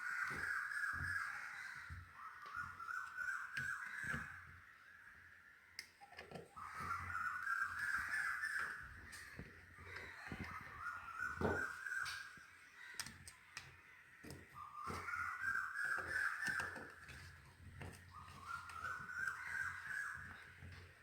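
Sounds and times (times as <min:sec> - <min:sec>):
crows cawing: 0:00.0 - 0:21.0
hands clicking on wiring: 0:13.0 - 0:14.4.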